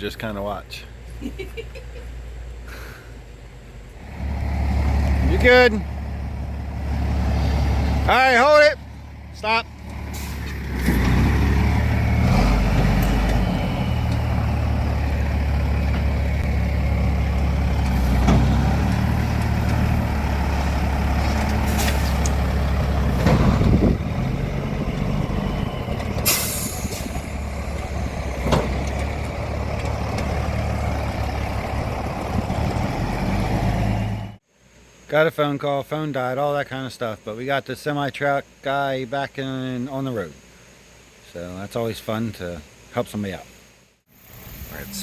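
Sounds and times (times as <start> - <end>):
diesel truck engine running: 3.2 - 34.4
air hiss: 10.0 - 10.7, 26.2 - 27.3.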